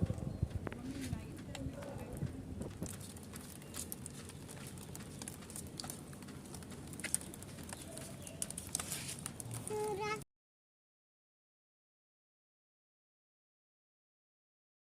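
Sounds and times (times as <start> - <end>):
rain dripping and pattering: 0.0 - 10.2.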